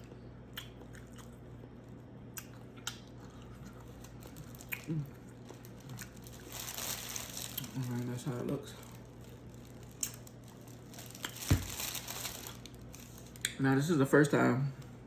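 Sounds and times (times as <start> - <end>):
chewing and mouth smacks: 0.0 - 6.4, 8.9 - 11.4.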